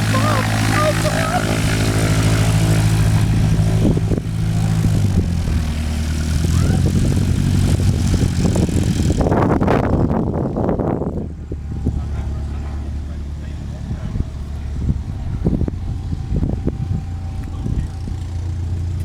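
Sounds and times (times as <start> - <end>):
rough rushing noise: 0.0 - 10.4
light aircraft engine and propeller: 0.0 - 19.0.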